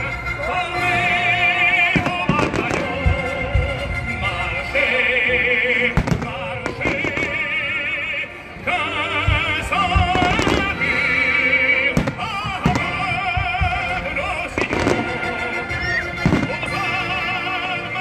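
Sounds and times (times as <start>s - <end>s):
loud music with operatic voice: 0.0s - 18.0s
firework bangs: 11.9s - 13.8s, 14.6s - 15.2s.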